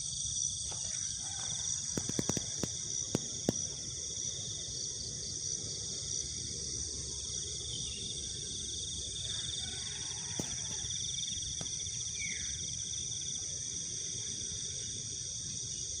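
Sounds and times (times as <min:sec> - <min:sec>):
insects trilling: 0:00.0 - 0:16.0
faint clicks: 0:01.9 - 0:03.7.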